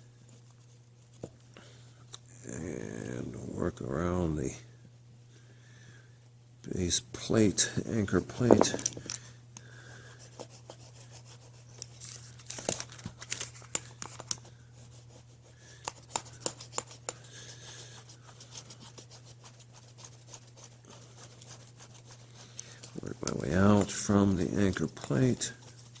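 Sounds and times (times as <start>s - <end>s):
steady low hum: 0.0s - 26.0s
tape scratching and crinkling: 11.8s - 14.4s.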